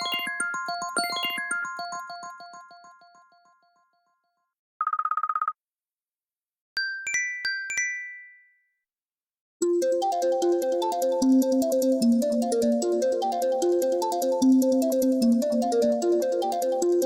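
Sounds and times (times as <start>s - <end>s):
repeating bell-like ringtone: 0.0s - 3.6s, 6.8s - 8.7s.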